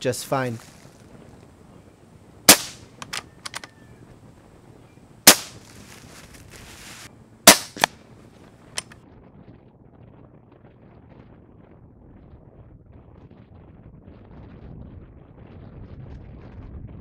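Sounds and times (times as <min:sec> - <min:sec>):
air rifle shots cracking: 0:02.5 - 0:03.8, 0:05.2 - 0:06.1, 0:07.4 - 0:08.0
light clicks: 0:03.0 - 0:03.8.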